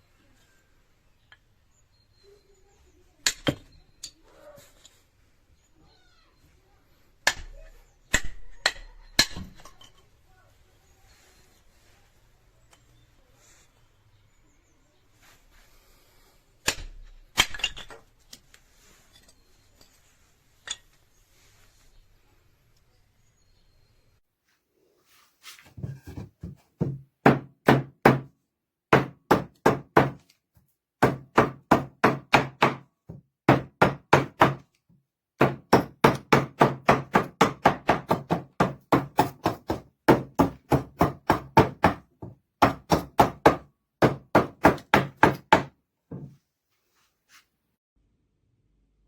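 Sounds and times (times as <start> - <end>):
hatchet head striking: 35.4 - 42.0.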